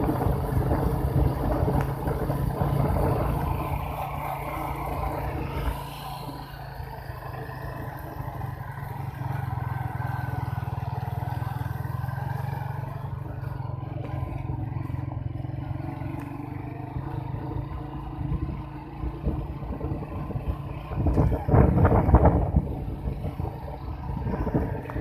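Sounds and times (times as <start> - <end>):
motorcycle engine running: 0.0 - 25.0.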